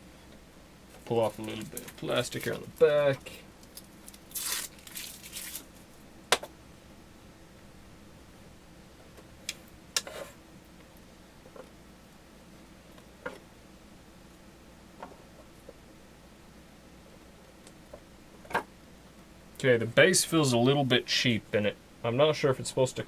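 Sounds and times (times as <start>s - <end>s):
plastic film rustling: 0.9s - 5.9s.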